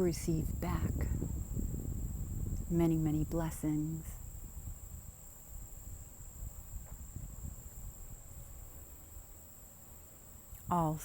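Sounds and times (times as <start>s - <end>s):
low rumble: 0.0s - 8.8s
crickets trilling: 0.0s - 11.0s.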